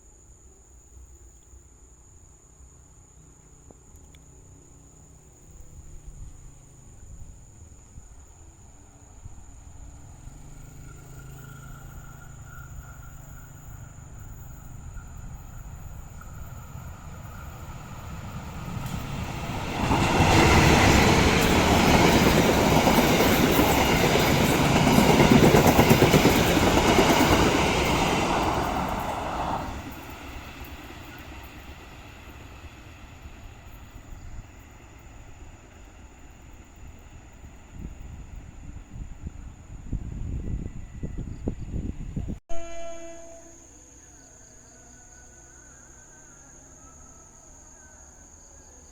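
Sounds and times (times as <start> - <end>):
train rumble: 5.0 - 44.9
wheels on rail: 5.2 - 44.1.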